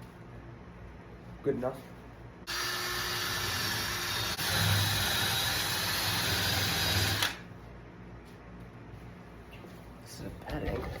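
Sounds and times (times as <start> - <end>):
handheld power tool motor whining: 2.5 - 7.5.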